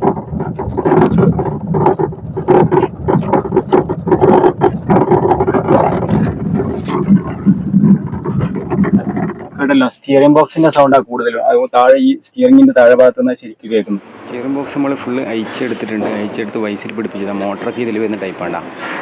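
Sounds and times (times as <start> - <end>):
steering knocking and clunking: 0.0 - 11.0
road and cabin rumble: 0.0 - 19.0.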